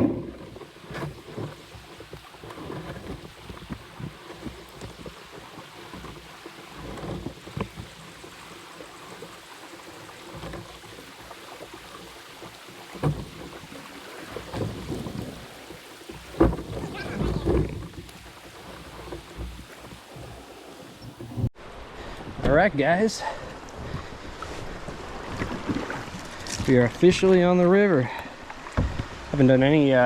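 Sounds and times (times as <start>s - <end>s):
hollow knocks on kayak: 0.0s - 8.1s, 9.9s - 21.5s, 28.6s - 29.2s
water sounds: 0.0s - 30.0s.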